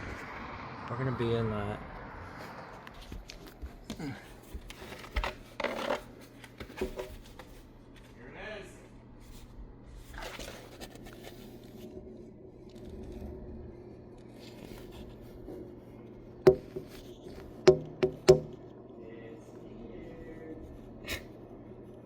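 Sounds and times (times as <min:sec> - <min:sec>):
low steady hum: 0:03.6 - 0:22.0
sharp knocks: 0:16.5 - 0:17.0, 0:17.6 - 0:18.6.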